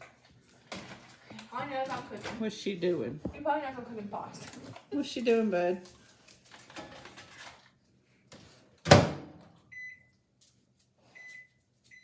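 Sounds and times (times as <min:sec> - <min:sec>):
keypad beeps: 0:09.7 - 0:10.1.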